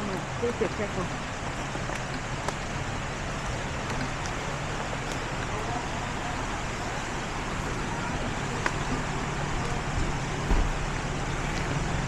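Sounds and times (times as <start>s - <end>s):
truck engine and tyre noise: 0.0s - 12.0s.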